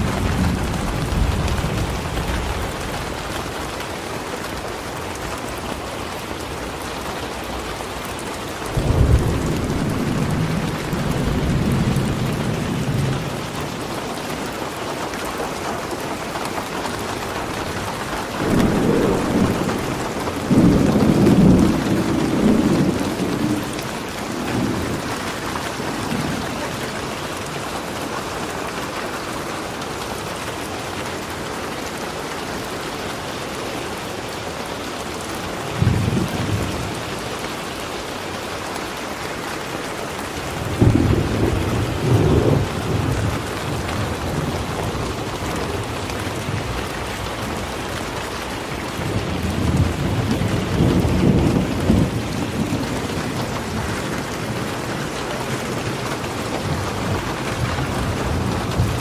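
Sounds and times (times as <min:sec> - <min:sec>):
thunder rumbling: 0:00.0 - 0:03.8, 0:08.6 - 0:27.2, 0:40.3 - 0:59.0
steady rain falling: 0:00.0 - 0:59.0.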